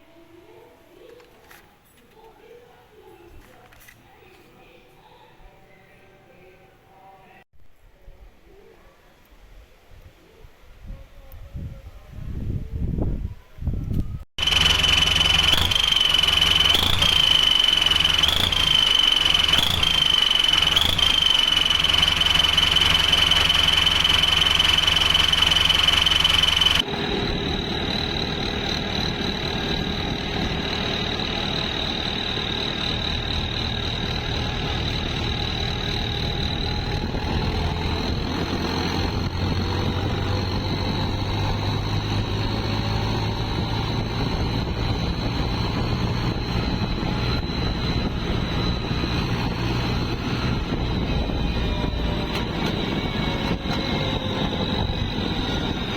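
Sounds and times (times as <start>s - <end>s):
high turbo whistle: 14.4s - 55.9s
tractor diesel engine running: 14.4s - 55.9s.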